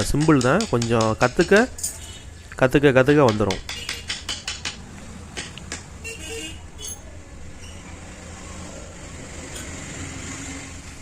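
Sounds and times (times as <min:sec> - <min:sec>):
carving chisel tapping wood: 0:00.0 - 0:01.8, 0:03.2 - 0:04.8, 0:05.4 - 0:05.9.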